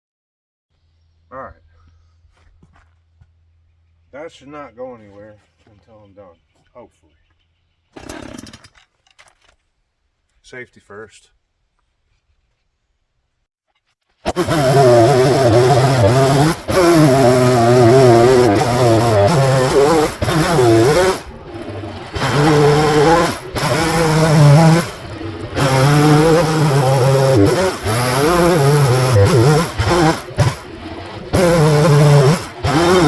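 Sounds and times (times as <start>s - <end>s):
chainsaw cutting wood: 7.9s - 9.5s, 14.3s - 33.0s.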